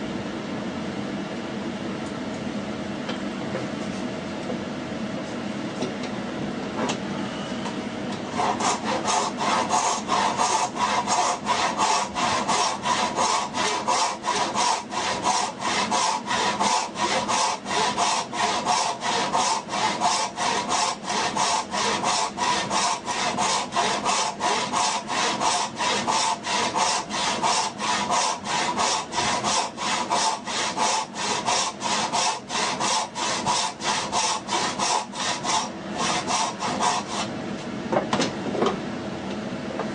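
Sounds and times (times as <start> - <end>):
hand saw cutting wood: 8.3 - 37.3.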